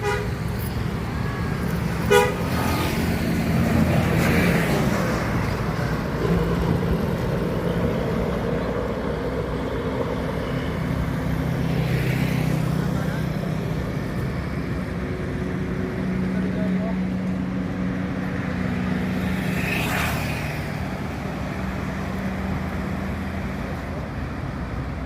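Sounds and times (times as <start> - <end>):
multi-tone bus horn: 0.0 - 0.5, 2.0 - 2.8
bus engines running: 0.0 - 25.0.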